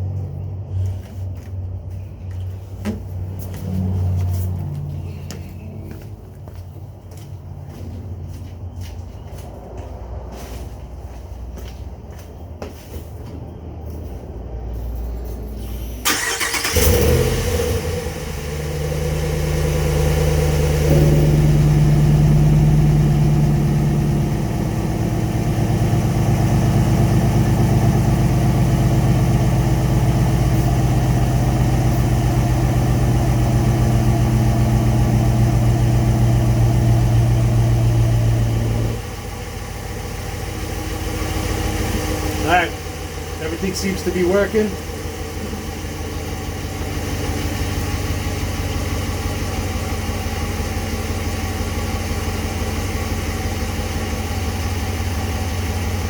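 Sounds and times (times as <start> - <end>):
pickup engine starting and idling: 15.6 - 56.0.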